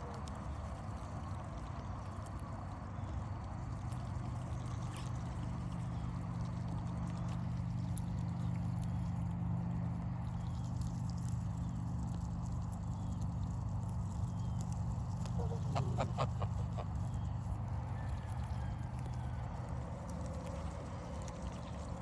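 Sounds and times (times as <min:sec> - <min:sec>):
steady low hum: 0:00.0 - 0:22.0
poultry calling: 0:15.2 - 0:17.3.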